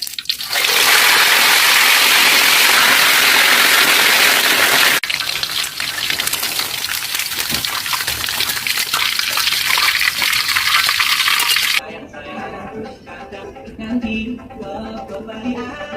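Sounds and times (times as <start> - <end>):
hot oil crackling and sizzling: 0.0 - 11.8.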